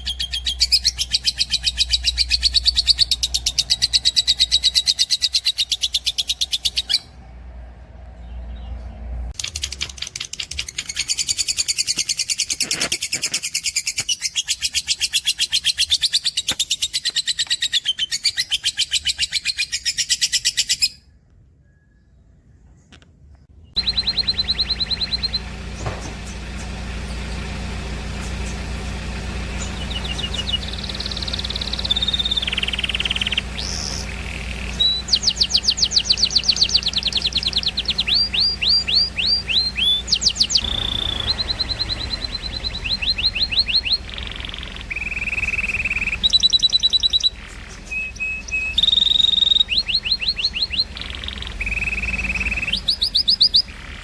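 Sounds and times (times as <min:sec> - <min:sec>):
songbirds trilling and chattering: 0:00.0 - 0:07.2, 0:22.1 - 0:54.0.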